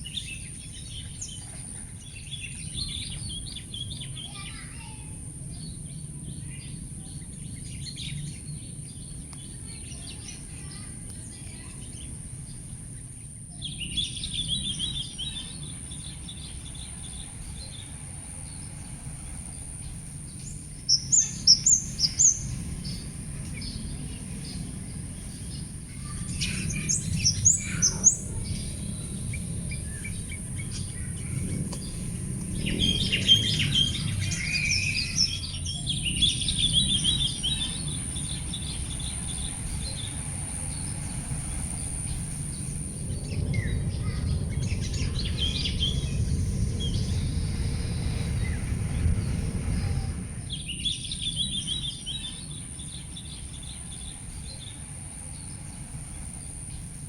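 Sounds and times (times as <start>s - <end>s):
steady high hiss: 0.0s - 57.0s
wild birds singing and calling: 0.0s - 57.0s
low rumble: 14.4s - 57.0s.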